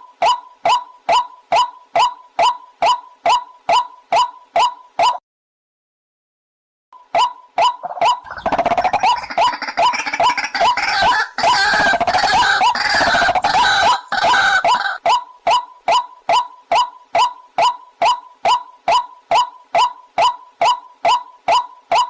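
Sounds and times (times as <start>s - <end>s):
waterhen calling: 7.2s - 22.0s.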